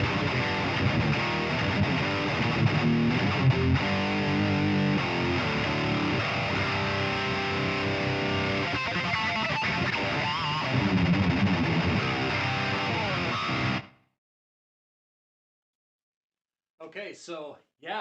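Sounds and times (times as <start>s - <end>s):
distorted electric guitar riffs: 0.0s - 14.1s.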